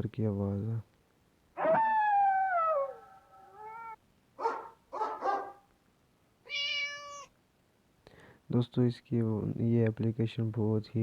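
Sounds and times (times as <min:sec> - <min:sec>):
dog barking: 0:01.6 - 0:01.9, 0:04.4 - 0:05.7
dog howling: 0:01.6 - 0:05.6
dog call: 0:01.6 - 0:05.7.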